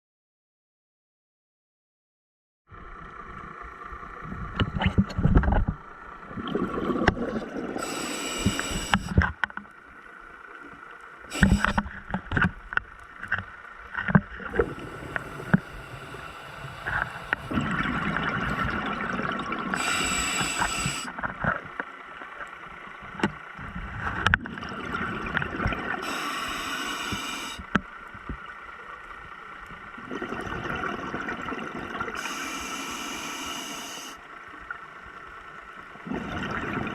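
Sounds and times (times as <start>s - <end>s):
bubbles gurgling: 6.3s - 9.1s, 14.4s - 21.1s, 30.0s - 32.2s, 36.0s - 36.9s
regulator breathing hiss: 7.8s - 9.3s, 11.3s - 12.0s, 14.6s - 17.6s, 19.7s - 21.2s, 26.0s - 27.8s, 32.2s - 34.3s.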